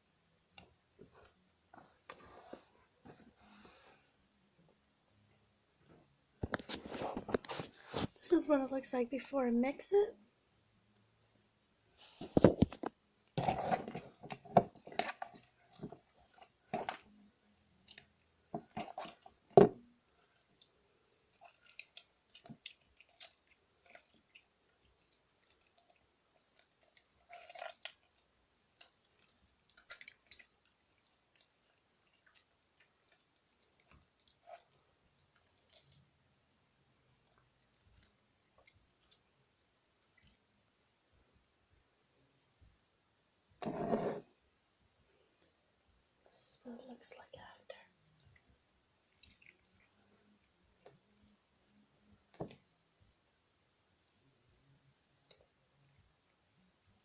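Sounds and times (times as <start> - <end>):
slime squelching and clicking: 20.1 - 36.5.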